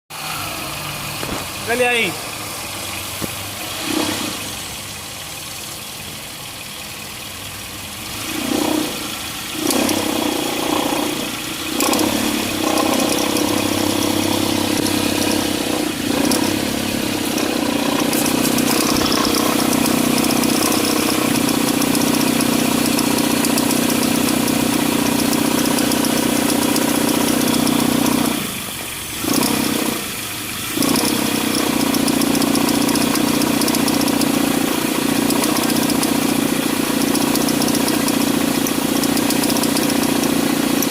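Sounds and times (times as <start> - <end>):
car engine running: 0.1 - 40.9
vibrating accessory belt drone: 11.8 - 28.3.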